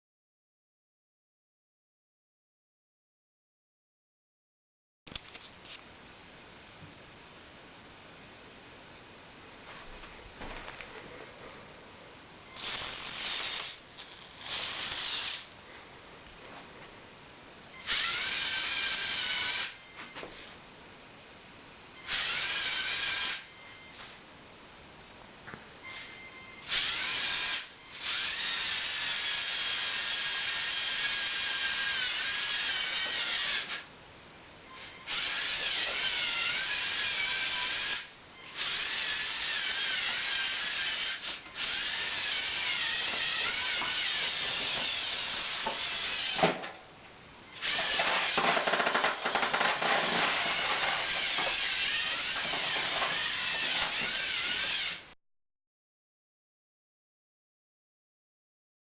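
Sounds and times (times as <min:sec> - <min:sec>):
toy electric motors whining: 0:12.5 - 0:15.5, 0:17.8 - 0:19.8, 0:22.0 - 0:24.2, 0:25.9 - 0:33.9, 0:34.7 - 0:46.6, 0:47.5 - 0:55.1.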